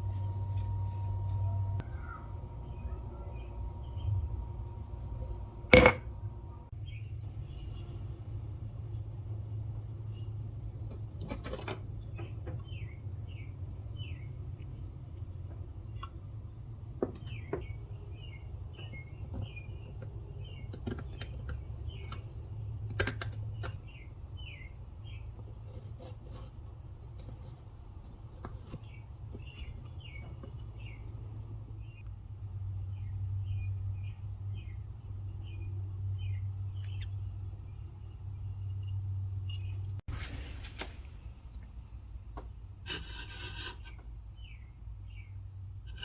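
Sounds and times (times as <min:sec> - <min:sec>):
small bird chirping: 0:32.8 - 0:39.9.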